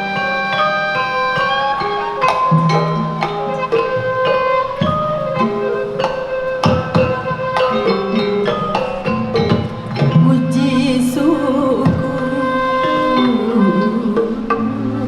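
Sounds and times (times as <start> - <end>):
struck metal-keyed instruments ringing: 0.0 - 15.0
sharp drum strokes: 1.2 - 13.7.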